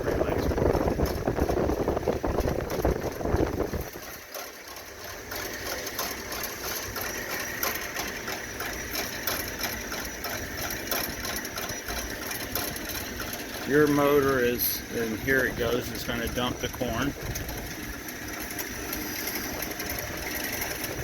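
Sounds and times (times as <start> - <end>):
popcorn machine motor whir: 0.0 - 21.0.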